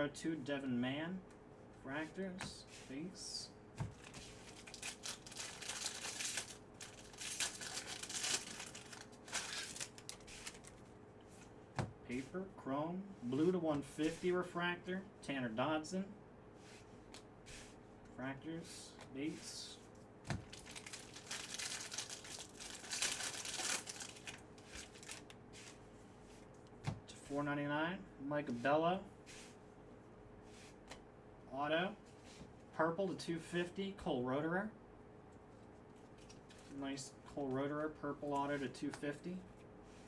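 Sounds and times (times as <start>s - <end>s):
foil wrapper tearing and crinkling: 4.0s - 10.8s, 20.4s - 25.3s.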